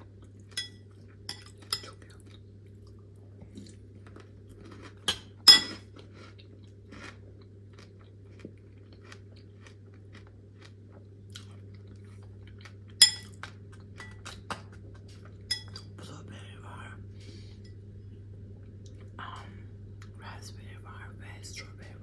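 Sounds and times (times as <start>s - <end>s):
chewing and crunching: 0.0s - 16.0s
spoon clinking against dish: 0.6s - 1.9s, 5.1s - 5.8s, 13.0s - 13.4s, 15.5s - 15.8s.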